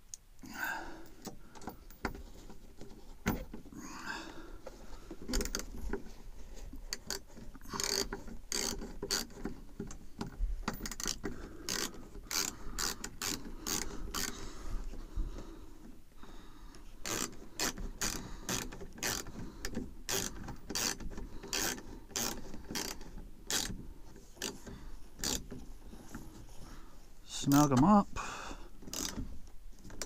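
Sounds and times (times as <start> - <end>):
ratchet wrench clicking: 6.9 - 9.4, 10.7 - 14.3, 17.0 - 19.3, 20.1 - 23.7, 25.2 - 25.4, 28.9 - 29.2.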